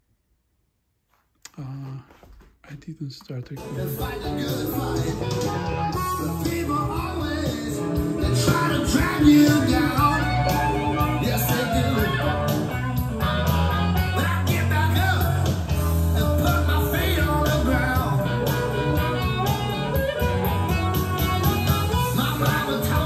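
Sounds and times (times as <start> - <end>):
blues-rock song with singing: 3.6 - 23.0.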